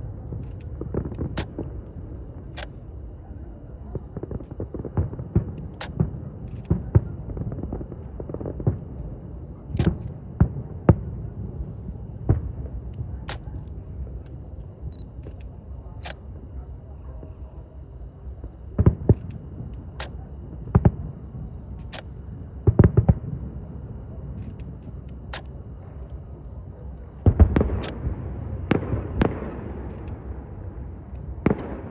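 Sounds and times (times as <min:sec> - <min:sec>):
fireworks cracking and booming: 0:03.9 - 0:13.5, 0:18.8 - 0:19.7, 0:22.6 - 0:24.4, 0:27.1 - 0:30.4, 0:31.2 - 0:31.9.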